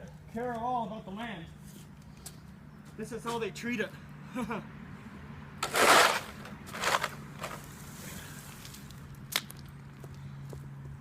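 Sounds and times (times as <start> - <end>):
shovel scraping concrete: 5.6 - 8.0.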